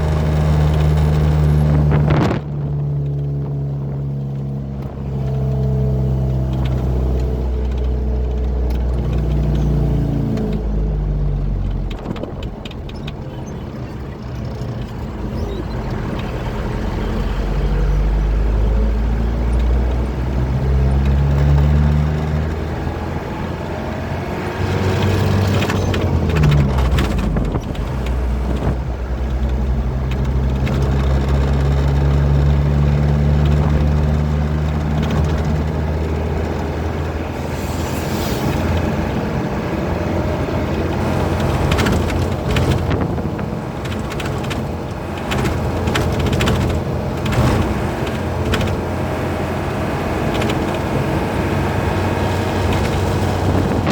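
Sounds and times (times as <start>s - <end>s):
truck engine running: 0.0s - 53.9s
tyre and road noise: 0.0s - 53.9s
rattling and clattering: 24.6s - 51.2s, 51.8s - 53.9s.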